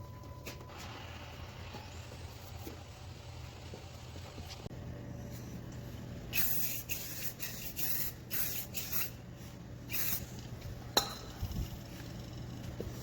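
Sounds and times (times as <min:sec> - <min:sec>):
aerosol spray can hissing: 0:06.3 - 0:09.2.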